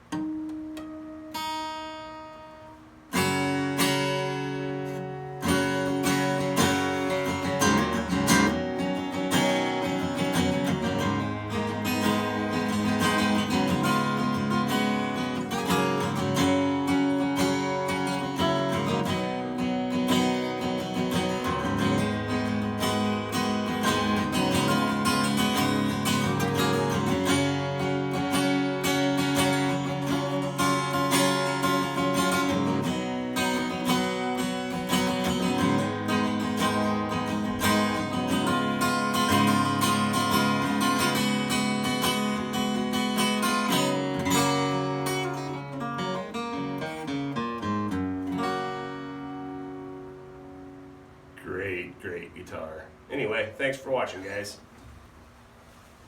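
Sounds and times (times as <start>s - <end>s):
acoustic guitar strummed chords: 0.0s - 54.6s.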